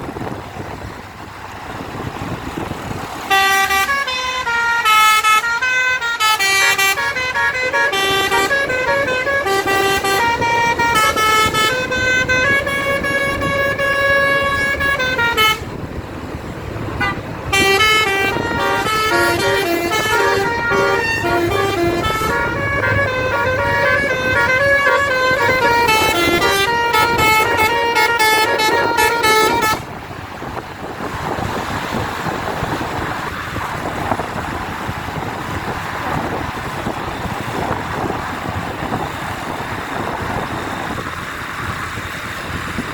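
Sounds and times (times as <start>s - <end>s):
steady rushing noise: 0.0s - 4.0s, 6.6s - 42.9s
bus musical horn playing a tune: 3.2s - 15.8s, 17.0s - 30.0s.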